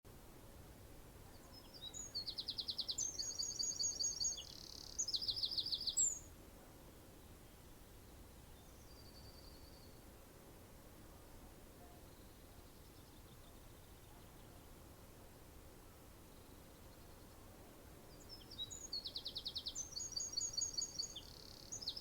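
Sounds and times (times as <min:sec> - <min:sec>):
background hiss: 0:00.1 - 0:22.0
songbird trilling: 0:01.6 - 0:06.3, 0:18.3 - 0:22.0.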